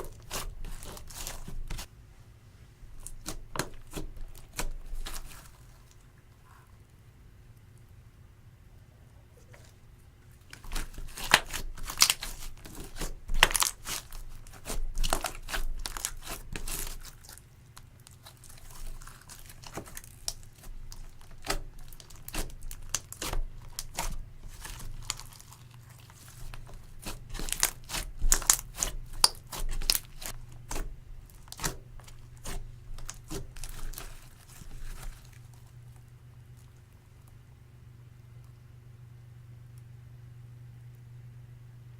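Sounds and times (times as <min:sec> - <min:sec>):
slime clicking and popping: 0:19.1 - 0:25.6.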